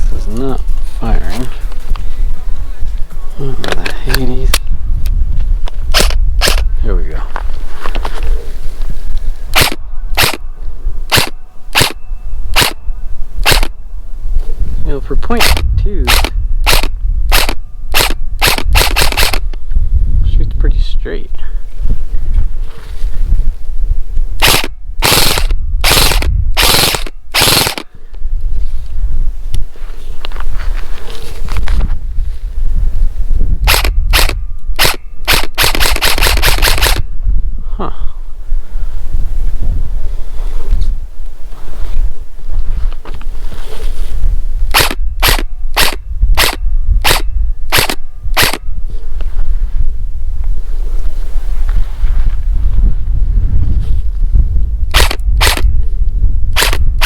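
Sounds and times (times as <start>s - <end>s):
wind rumbling on microphone: 0.0s - 57.0s
airsoft gun firing bursts: 9.6s - 10.4s, 11.1s - 12.8s, 13.4s - 13.7s, 15.4s - 19.4s, 24.4s - 27.9s, 33.7s - 37.0s, 44.7s - 48.6s, 54.9s - 55.7s, 56.6s - 56.8s.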